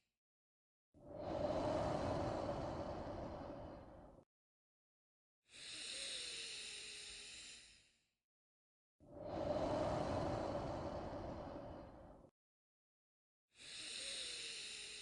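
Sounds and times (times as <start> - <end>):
slow human breathing: 1.0 - 4.2, 5.5 - 7.8, 9.1 - 12.3, 13.6 - 15.0.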